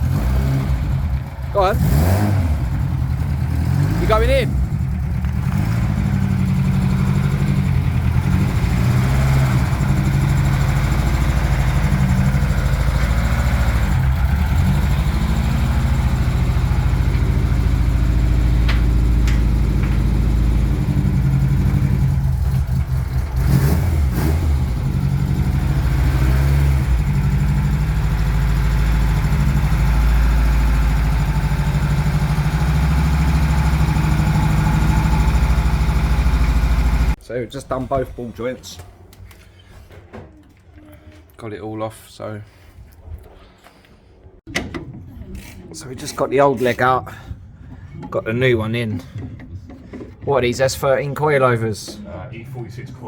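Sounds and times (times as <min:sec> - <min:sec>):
car engine running: 0:00.0 - 0:37.2.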